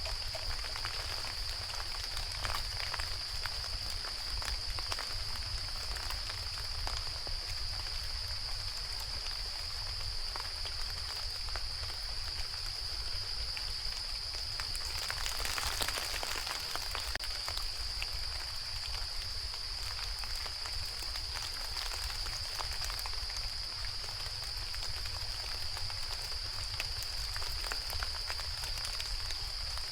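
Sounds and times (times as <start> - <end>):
rain on bamboo leaves: 0.0 - 29.9.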